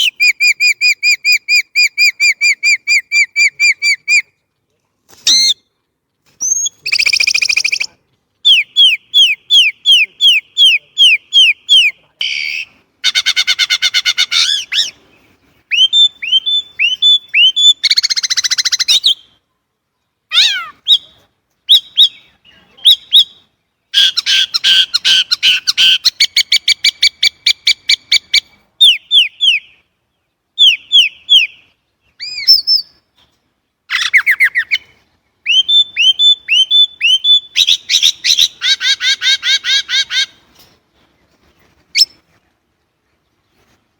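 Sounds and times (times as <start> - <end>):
blackbird singing: 6.4 - 15.0, 15.7 - 19.4, 20.3 - 40.4.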